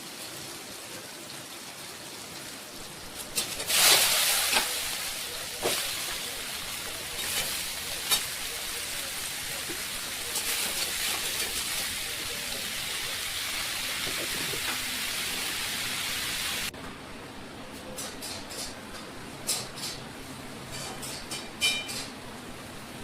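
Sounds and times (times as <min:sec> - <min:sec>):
steady hiss: 0:02.6 - 0:16.7.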